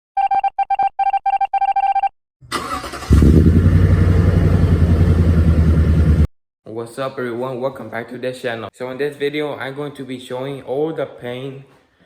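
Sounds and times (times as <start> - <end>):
loud low rumble: 3.2 - 6.3.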